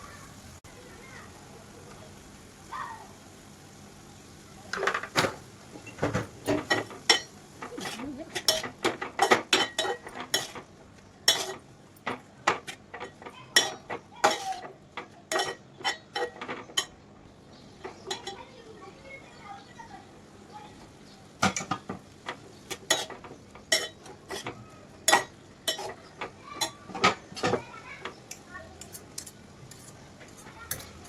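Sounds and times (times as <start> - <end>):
metal utensil scraping a pan: 5.8 - 10.7, 11.3 - 11.6, 12.5 - 14.7, 15.3 - 17.0, 21.5 - 27.2.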